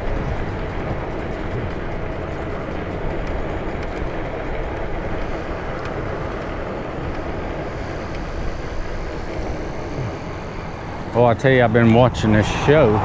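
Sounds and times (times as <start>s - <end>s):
road noise: 0.0s - 13.0s
wind on microphone: 0.0s - 13.0s.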